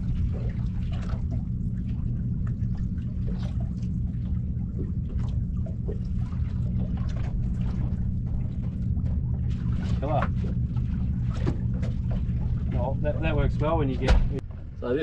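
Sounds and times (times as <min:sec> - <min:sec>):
water splashing and trickling: 0:00.0 - 0:14.4
steady low rumble: 0:00.0 - 0:15.0.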